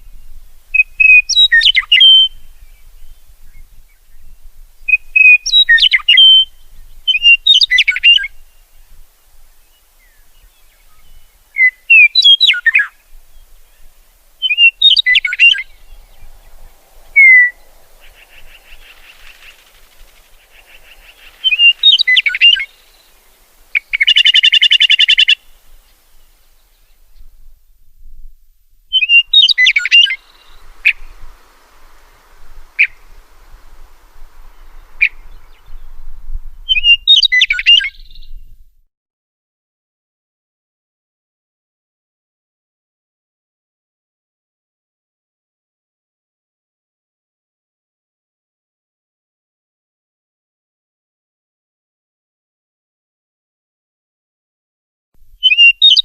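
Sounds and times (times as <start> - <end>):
songbird warbling: 0.0 - 27.3, 28.9 - 38.4, 55.4 - 56.0
harsh buzzy bird call: 14.4 - 26.2, 28.9 - 35.9.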